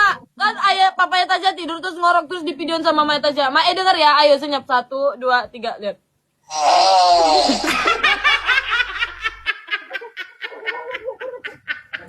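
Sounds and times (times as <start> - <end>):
rhythmic laughter: 7.6 - 12.0.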